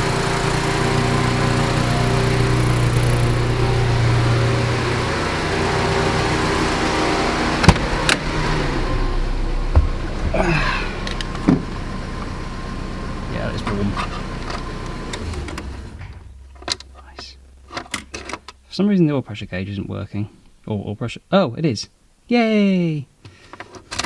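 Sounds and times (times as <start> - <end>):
car engine idling: 0.0 - 18.7
thump: 7.6 - 8.2, 9.7 - 10.7, 11.4 - 11.7.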